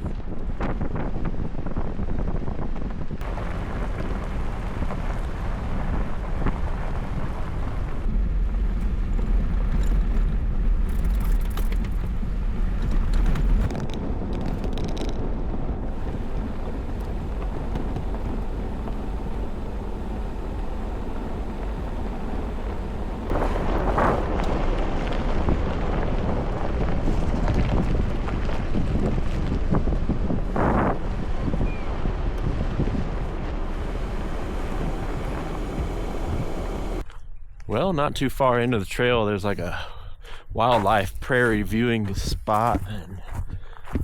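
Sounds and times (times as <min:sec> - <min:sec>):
vehicle engine and tyres rumbling: 0:00.0 - 0:37.7
wind buffeting microphone: 0:00.0 - 0:38.1, 0:39.6 - 0:44.0.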